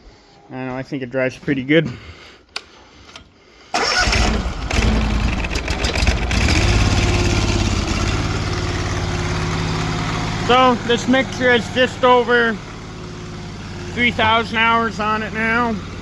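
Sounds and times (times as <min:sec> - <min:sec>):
engine starting and idling: 0:03.7 - 0:16.0.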